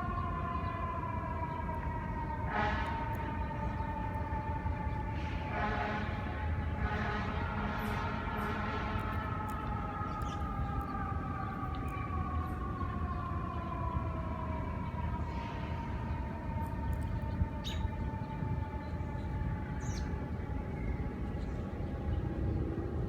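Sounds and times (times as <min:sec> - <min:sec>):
distant siren sliding down: 0:00.0 - 0:20.3
birds chirping: 0:08.4 - 0:22.6.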